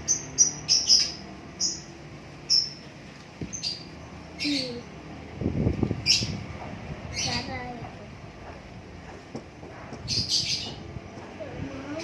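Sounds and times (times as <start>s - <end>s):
small bird chirping: 0.0s - 5.0s, 5.8s - 6.5s, 7.1s - 7.7s, 10.0s - 12.0s.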